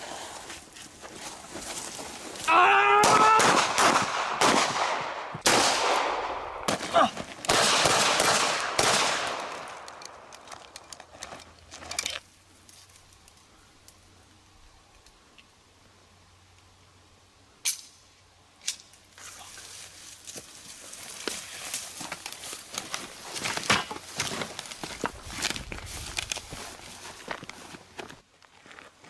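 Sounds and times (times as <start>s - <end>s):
person yelling: 2.4s - 3.7s, 6.8s - 7.3s
rapid gunfire: 3.0s - 6.4s, 7.5s - 9.4s
scattered clicks: 8.6s - 12.2s.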